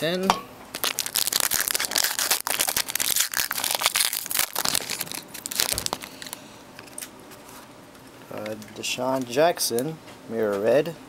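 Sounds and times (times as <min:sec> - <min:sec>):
foil wrapper crinkling: 0:00.7 - 0:07.5.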